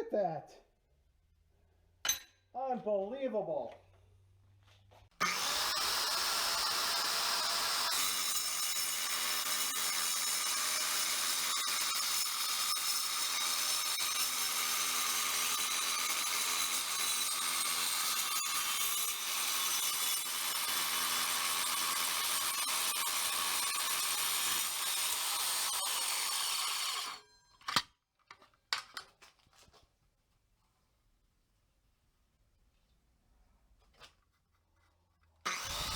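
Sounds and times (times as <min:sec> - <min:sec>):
circular saw cutting steel: 0:05.2 - 0:27.3, 0:35.5 - 0:35.9.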